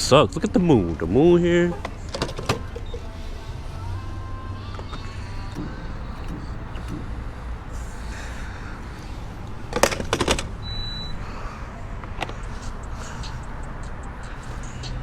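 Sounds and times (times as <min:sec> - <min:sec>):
sharp clicks: 0:04.8 - 0:11.2, 0:12.0 - 0:15.0.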